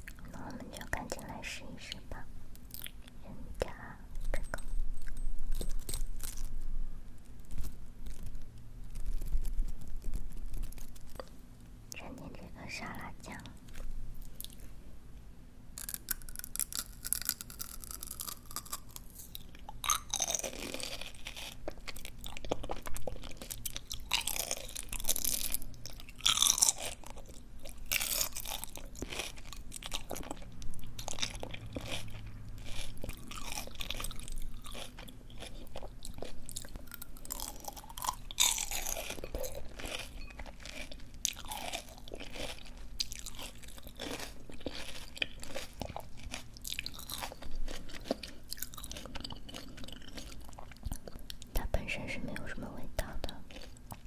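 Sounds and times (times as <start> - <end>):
wet crunching chewing: 7.4 - 11.4, 15.8 - 51.6, 53.3 - 54.0.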